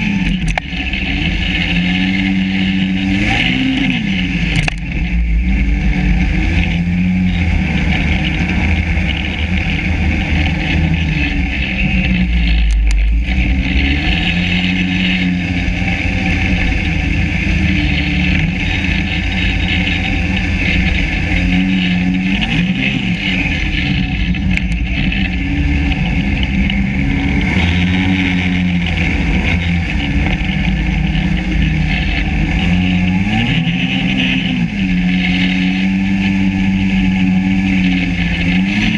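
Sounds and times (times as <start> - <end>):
snowmobile engine running: 0.0 - 38.9.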